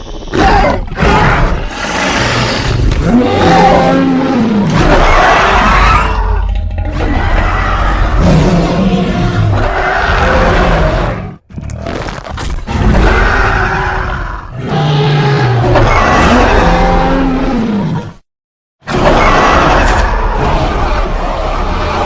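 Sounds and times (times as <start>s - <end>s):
loud low creature roars: 0.4s - 11.4s, 12.7s - 18.2s.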